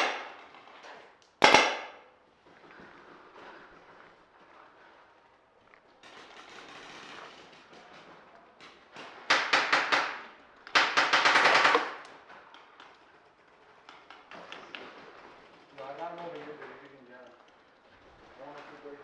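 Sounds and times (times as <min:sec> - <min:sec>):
paintball marker firing: 0:01.4 - 0:02.0, 0:09.3 - 0:12.1.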